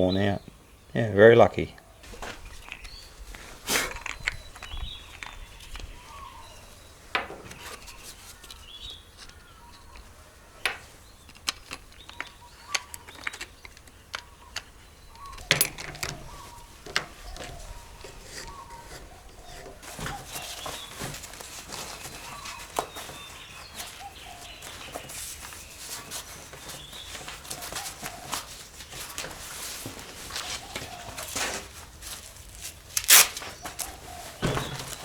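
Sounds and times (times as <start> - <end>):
birds chirping faintly: 0.0 - 35.0
small hard objects clicking: 3.9 - 6.0.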